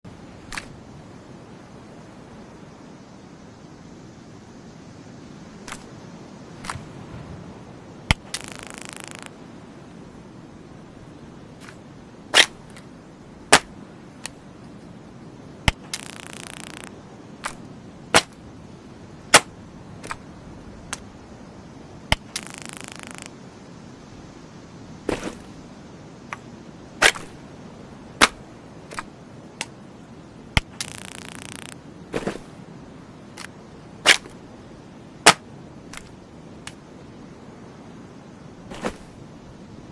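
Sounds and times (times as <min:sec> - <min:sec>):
crackling electric arcs: 0:08.1 - 0:09.3, 0:15.7 - 0:17.0, 0:22.1 - 0:23.3, 0:30.6 - 0:31.8.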